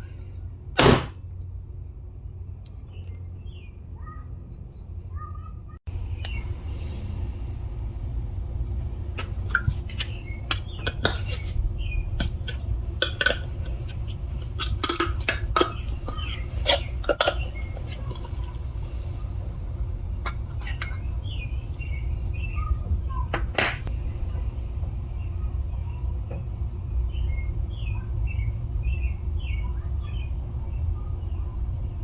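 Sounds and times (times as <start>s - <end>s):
steady low hum: 0.0s - 32.0s
hard objects clinking: 9.2s - 18.6s.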